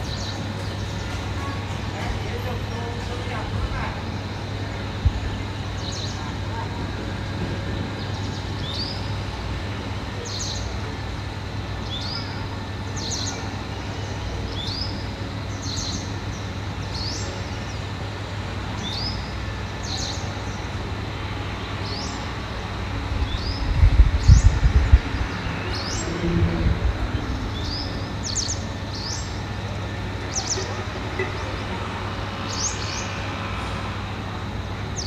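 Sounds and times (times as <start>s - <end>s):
steady low rumble: 20.6s - 35.0s.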